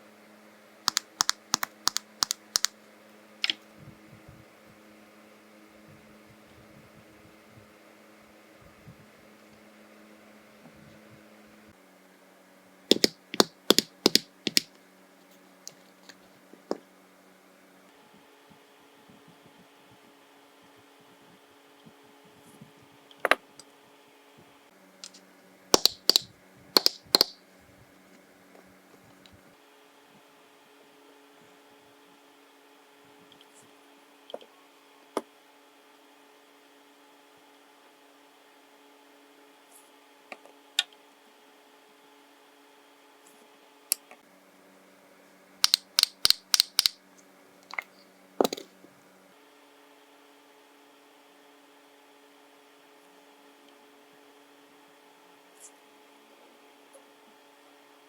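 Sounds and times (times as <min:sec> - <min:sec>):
faint steady hum: 0:00.0 - 0:58.0
sharp clicks of handled supplies: 0:00.9 - 0:02.8, 0:12.9 - 0:14.7, 0:25.8 - 0:27.4, 0:45.6 - 0:47.0.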